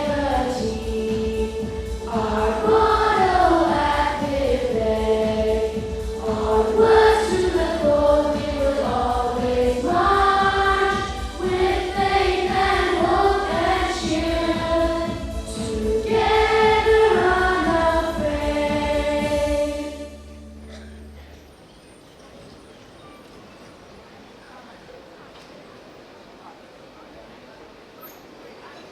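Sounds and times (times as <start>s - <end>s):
choir of students singing: 0.0s - 20.8s
instrumental accompaniment: 0.0s - 21.6s.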